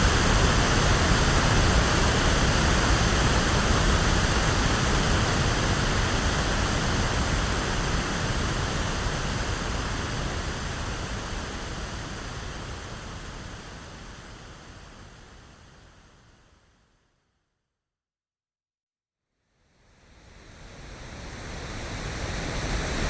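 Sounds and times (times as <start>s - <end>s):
pink noise hiss: 20.8s - 23.0s.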